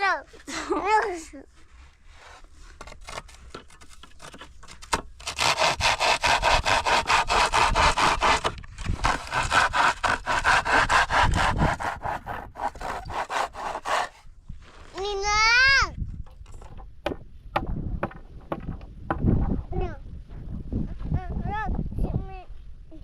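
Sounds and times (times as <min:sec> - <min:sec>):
handsaw cutting wood: 0:05.2 - 0:14.3.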